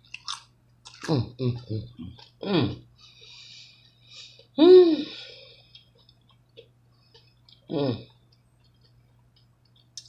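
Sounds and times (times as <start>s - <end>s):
chewing crunchy taco: 0.0s - 2.4s.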